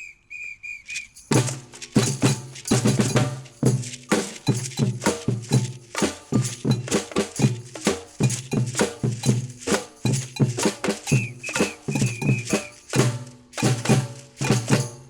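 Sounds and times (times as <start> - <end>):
deep drums beating: 1.3 - 15.0
hand percussion hits: 1.3 - 15.0
high piping tones: 10.1 - 13.0.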